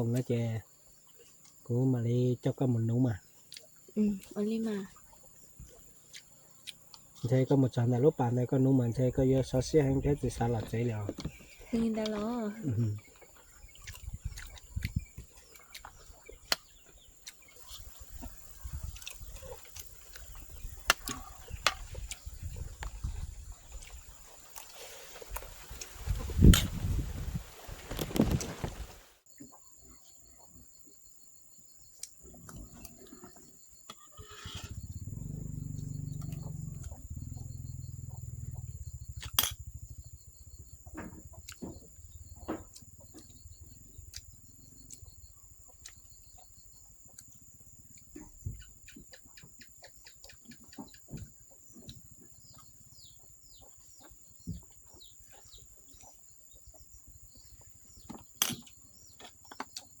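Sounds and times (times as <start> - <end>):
insects trilling: 0.0 - 60.0
low rumble: 34.7 - 40.9
sharp clicks or knocks: 39.2 - 39.6.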